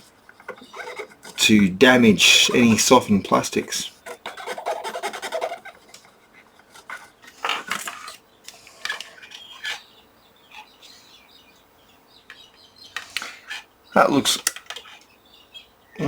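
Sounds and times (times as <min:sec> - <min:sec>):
small tools scraping: 0:00.0 - 0:02.9, 0:03.6 - 0:09.9, 0:12.9 - 0:13.7, 0:14.3 - 0:15.1.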